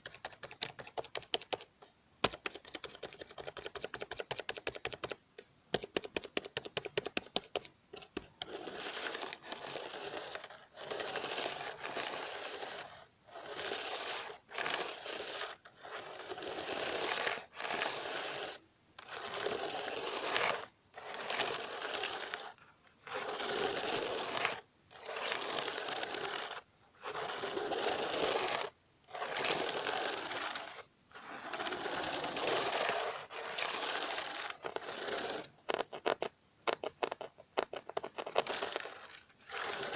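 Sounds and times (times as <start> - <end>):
rapid keyboard clicking: 0.0 - 8.6
fast scratching bursts: 0.0 - 39.9.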